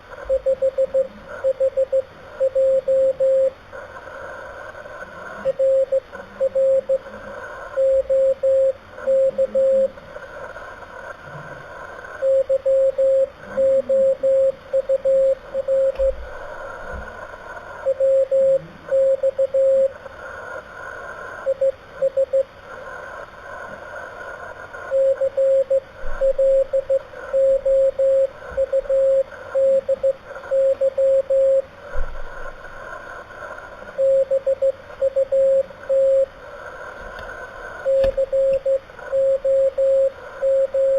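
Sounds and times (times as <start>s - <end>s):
morse code tone: 0.2s - 3.5s, 5.5s - 7.0s, 12.2s - 16.0s, 17.9s - 19.9s, 37.9s - 40.9s.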